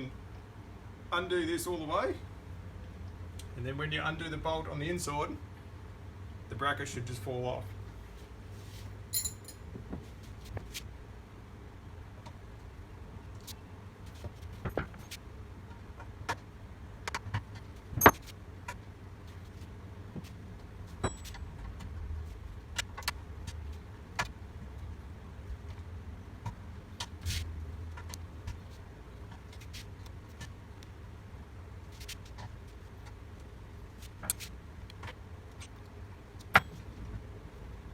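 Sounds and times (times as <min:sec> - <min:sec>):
low steady rumble: 0:00.0 - 0:37.9
metal parts clicking and knocking: 0:09.2 - 0:09.6, 0:18.0 - 0:18.3.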